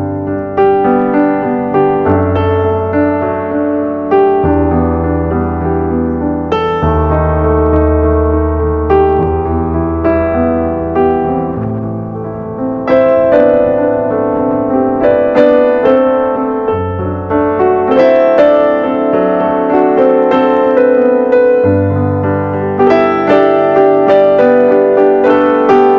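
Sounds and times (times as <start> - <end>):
gentle piano music: 0.0 - 25.9.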